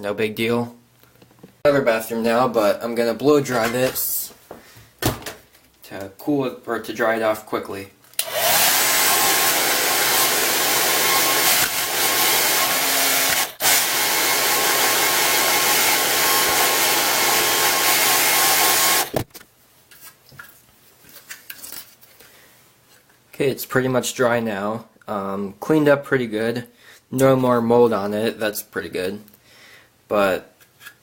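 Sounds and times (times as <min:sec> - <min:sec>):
hair dryer blowing air: 0:08.2 - 0:19.2.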